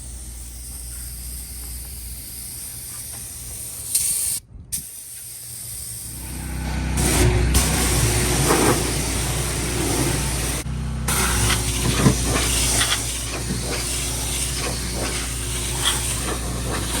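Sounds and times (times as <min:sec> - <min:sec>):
pressure washer water jet hiss: 0:00.0 - 0:06.4, 0:07.0 - 0:17.0
low hum: 0:06.1 - 0:17.0.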